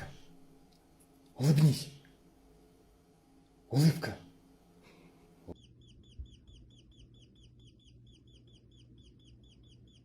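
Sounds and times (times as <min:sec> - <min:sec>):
faint bird chirping: 0:05.0 - 0:10.0.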